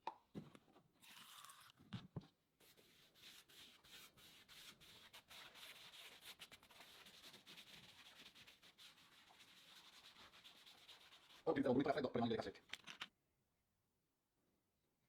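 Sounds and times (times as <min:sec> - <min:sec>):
scratchy rubbing on wood: 0:02.7 - 0:11.6.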